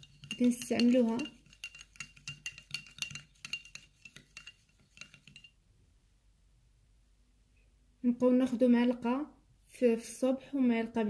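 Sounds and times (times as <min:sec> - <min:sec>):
metal spoon clinking in container: 0:00.0 - 0:05.6.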